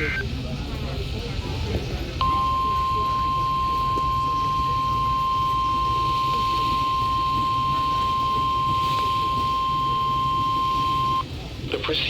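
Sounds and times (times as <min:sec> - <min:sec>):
steady high alarm tone: 0:02.2 - 0:11.2.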